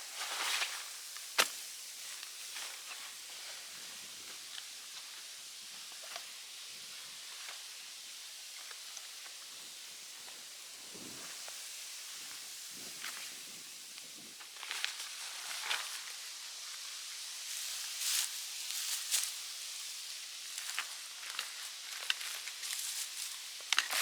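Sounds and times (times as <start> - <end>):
rustling: 0.0 - 6.4, 14.0 - 19.6, 20.4 - 24.0
outdoor ambient hiss: 0.0 - 24.0.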